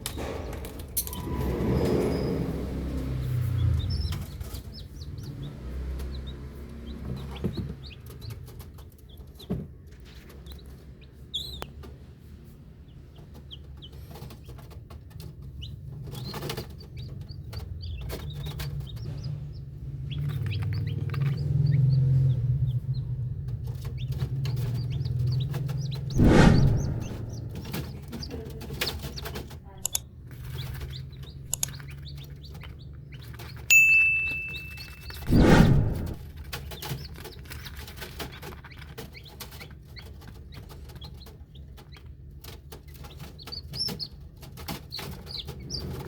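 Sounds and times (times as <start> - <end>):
chicks peeping: 0.0 - 33.7, 34.3 - 46.0
low rumble: 22.2 - 28.3, 35.1 - 36.4.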